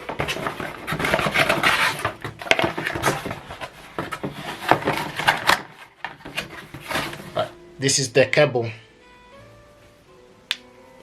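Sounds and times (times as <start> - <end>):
packaging rustling and scraping: 0.0 - 7.6.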